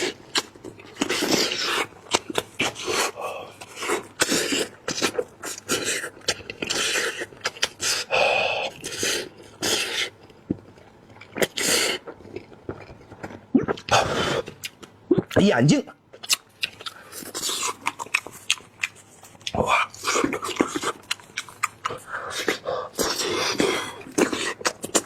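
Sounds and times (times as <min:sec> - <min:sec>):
chewing and sucking meat: 0:00.0 - 0:14.9, 0:16.2 - 0:25.0
breathy mouth noises: 0:16.2 - 0:25.0.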